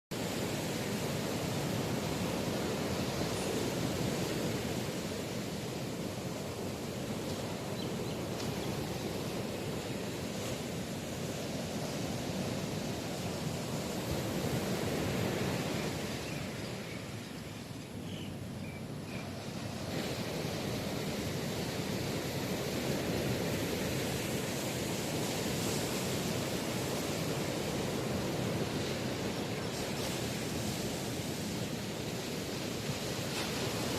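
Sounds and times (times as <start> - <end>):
strong wind: 0.1 - 33.9
heavy surf breaking: 19.2 - 33.9.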